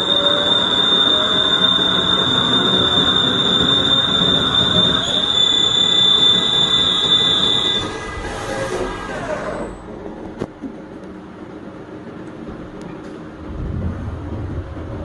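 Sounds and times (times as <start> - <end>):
dense mechanical rumble: 13.4 - 15.0.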